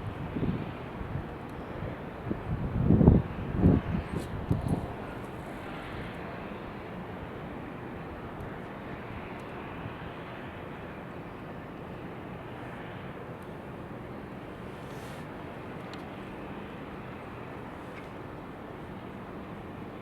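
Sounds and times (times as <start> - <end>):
wind noise: 0.0 - 6.0.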